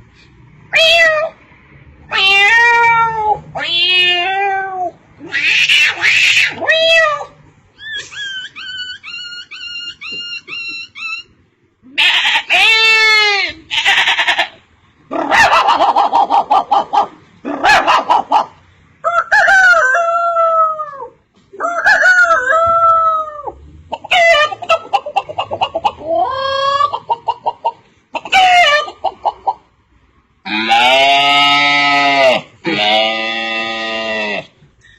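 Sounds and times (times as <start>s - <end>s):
rooster crowing and clucking: 15.2s - 29.6s.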